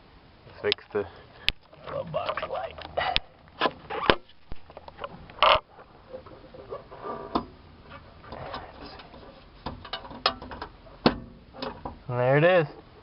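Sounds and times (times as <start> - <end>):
light rustling: 0.6 - 12.1
handling clicks and knocks: 7.3 - 12.0.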